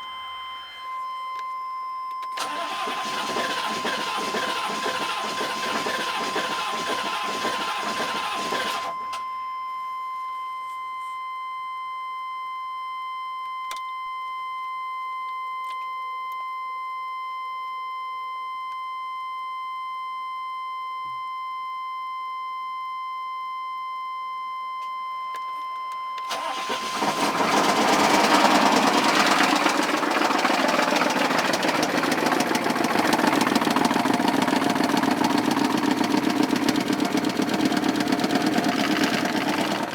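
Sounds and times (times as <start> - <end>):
high electronic warning tone: 0.0 - 1.5
engine cranking and restarting: 2.4 - 9.0, 26.3 - 39.9
diesel engine knocking: 26.9 - 39.9.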